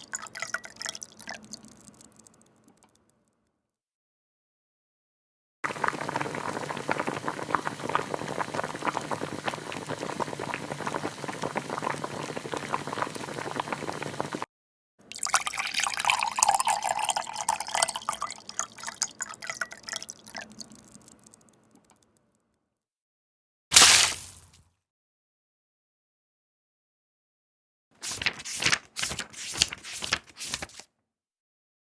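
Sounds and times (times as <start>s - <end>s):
crackle of dripping liquid: 0.0s - 3.3s, 15.3s - 22.2s.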